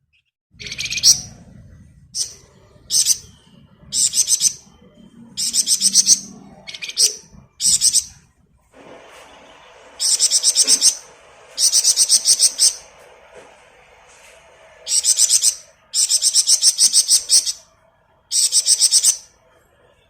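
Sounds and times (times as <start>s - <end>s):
songbird trilling: 0.6s - 1.4s, 2.2s - 3.4s, 4.0s - 4.7s, 5.4s - 8.2s, 10.0s - 12.8s, 14.9s - 17.6s, 18.3s - 19.3s.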